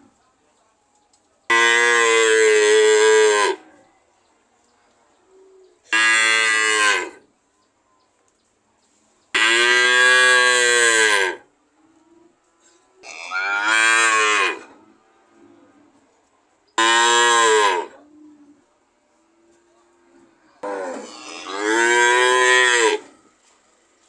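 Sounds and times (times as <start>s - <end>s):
cow mooing: 9.4s - 11.4s, 13.0s - 14.7s, 16.8s - 18.0s, 20.6s - 23.2s.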